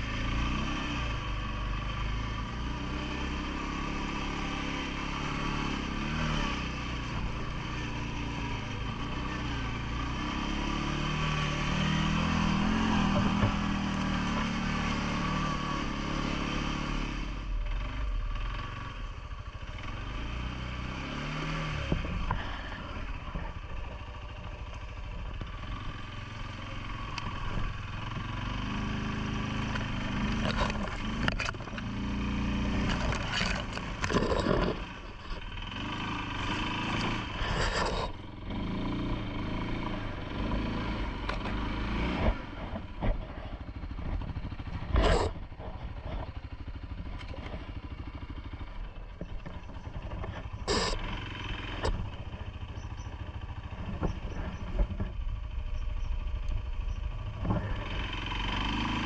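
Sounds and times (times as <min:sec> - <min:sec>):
atv engine revving: 0:00.0 - 0:59.0.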